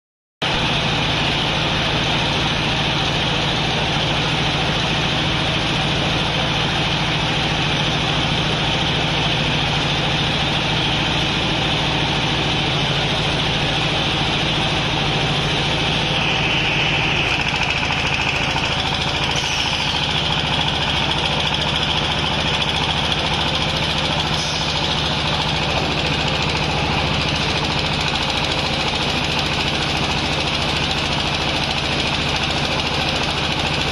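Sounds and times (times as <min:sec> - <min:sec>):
baler machine humming: 0:00.5 - 0:33.9
hissing whine: 0:08.0 - 0:33.4.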